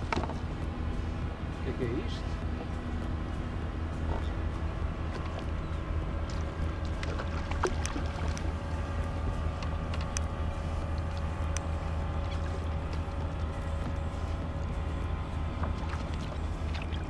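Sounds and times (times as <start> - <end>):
low engine rumble: 0.0 - 17.0
light clicks and ticks: 9.4 - 14.0.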